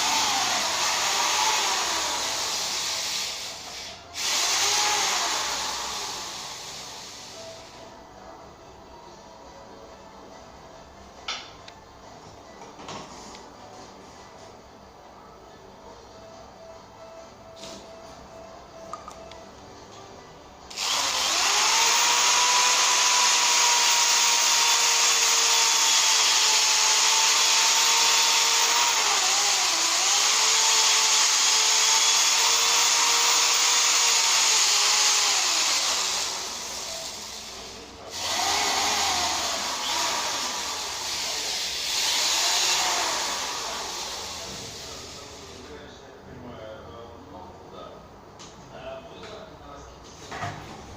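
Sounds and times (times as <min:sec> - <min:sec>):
small power tool whining: 0:20.7 - 0:45.0.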